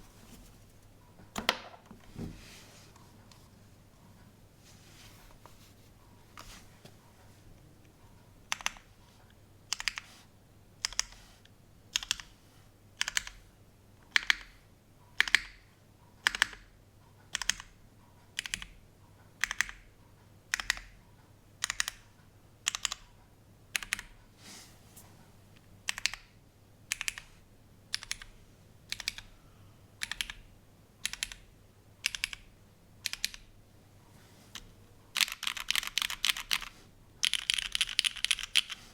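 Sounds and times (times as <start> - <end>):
keyboard keystrokes: 35.2 - 38.8.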